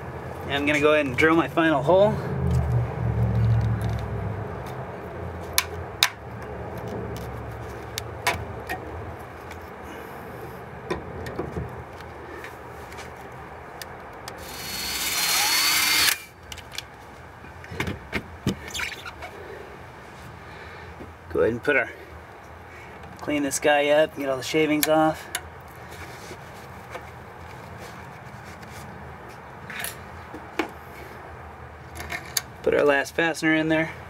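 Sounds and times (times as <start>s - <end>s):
power drill boring through metal: 14.4s - 16.3s.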